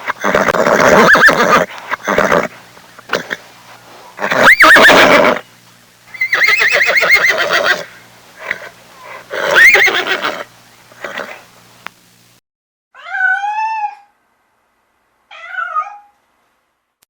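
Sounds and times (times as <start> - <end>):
horse whinnying: 0.0 - 2.5, 4.2 - 5.4, 6.2 - 11.4.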